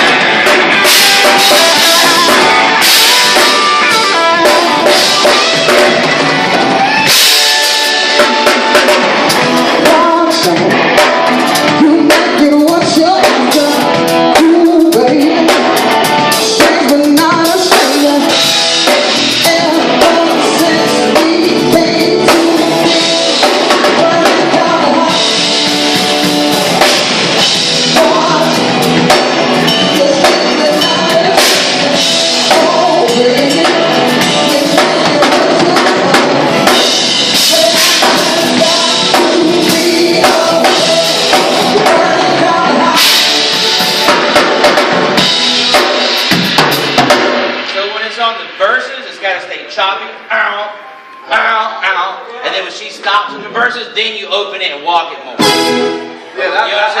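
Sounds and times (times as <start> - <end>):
person singing: 0.0 - 44.8
electric guitar: 0.0 - 47.9, 55.3 - 56.9
drum kit: 0.0 - 49.2, 55.4 - 57.0
live funk band playing: 0.0 - 51.2, 51.8 - 57.0.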